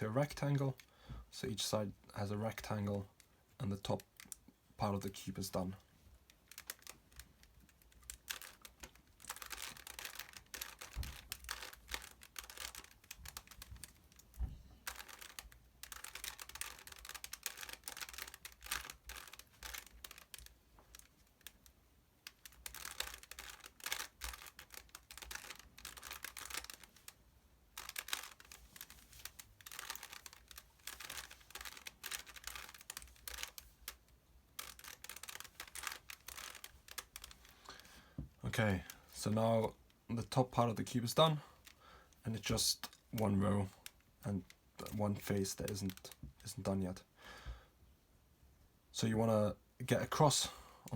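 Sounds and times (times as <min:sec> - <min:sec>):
plastic puzzle cube clicking: 0:06.3 - 0:37.6, 0:43.7 - 0:46.2.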